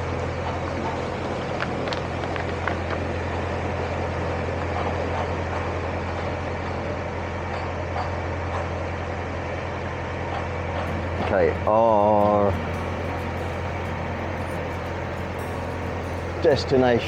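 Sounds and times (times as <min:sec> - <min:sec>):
boat engine humming: 0:10.9 - 0:17.0.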